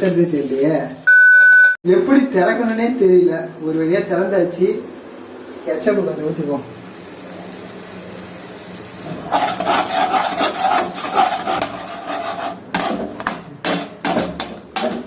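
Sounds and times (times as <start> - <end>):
spatula scraping sauce in a pan: 9.3 - 15.0
sharp spatula taps: 12.7 - 15.0.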